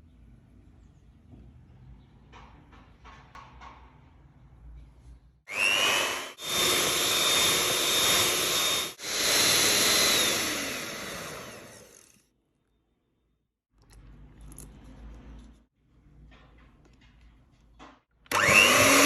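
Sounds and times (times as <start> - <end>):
kitchen appliance motor whine: 5.5 - 12.2, 18.3 - 19.0.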